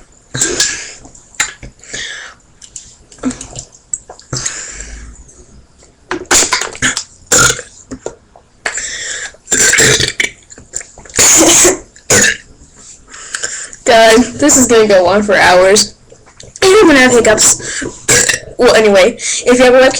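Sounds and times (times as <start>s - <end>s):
woman burping: 6.5s - 7.7s, 9.5s - 10.4s, 11.2s - 12.5s, 16.8s - 18.8s.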